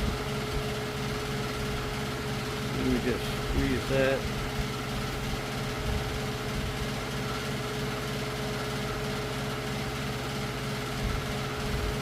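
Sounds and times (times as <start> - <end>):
steady motor hum: 0.0 - 12.0.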